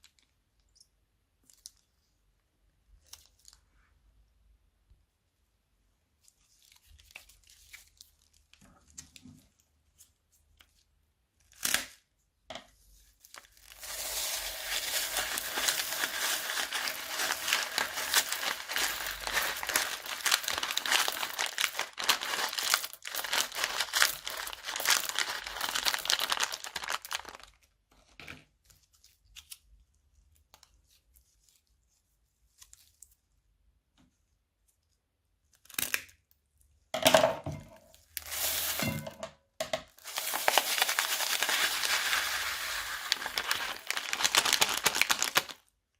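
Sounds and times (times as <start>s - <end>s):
crunchy slime crackling: 13.4s - 27.6s, 40.0s - 45.7s.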